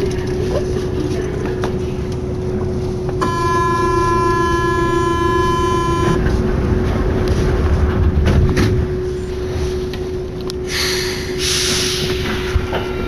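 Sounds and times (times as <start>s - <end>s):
train hum and rumble: 0.0s - 13.0s
train electronic warning tone: 3.2s - 6.4s.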